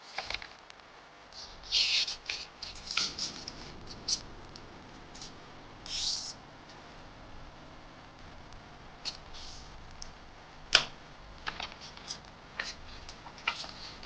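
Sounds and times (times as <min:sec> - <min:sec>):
paper rustling and scraping: 0:00.0 - 0:00.5, 0:01.4 - 0:04.2, 0:05.2 - 0:06.4, 0:11.4 - 0:14.0.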